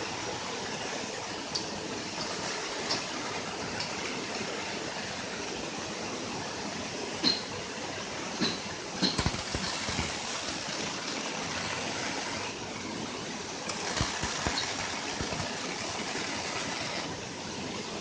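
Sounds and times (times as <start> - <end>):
arc welding crackling hiss: 0.0 - 5.4, 8.4 - 18.0
sharp welding pops: 8.4 - 12.5, 13.7 - 17.2.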